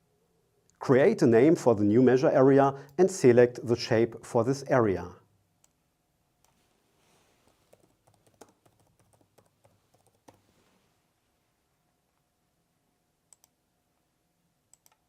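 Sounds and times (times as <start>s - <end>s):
faint keyboard typing: 7.4s - 10.8s, 13.3s - 14.1s, 14.7s - 15.0s.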